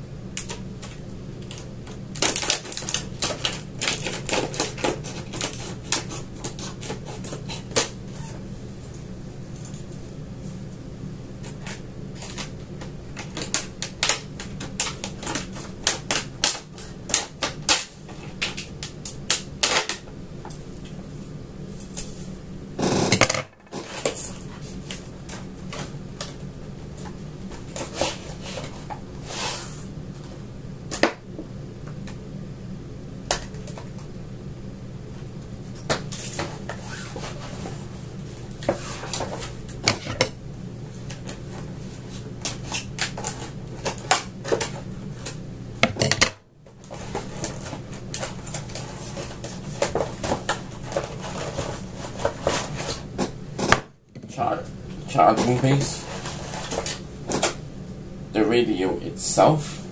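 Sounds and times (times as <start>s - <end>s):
steady low hum: 0.0s - 59.9s
cardboard and plastic packaging rustling: 0.4s - 10.6s, 11.4s - 20.1s, 23.6s - 31.1s, 35.7s - 45.4s, 46.7s - 57.6s.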